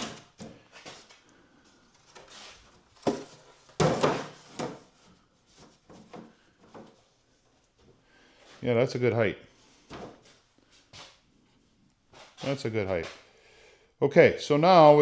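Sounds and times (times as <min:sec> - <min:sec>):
plastic crates knocking: 0:03.0 - 0:05.0.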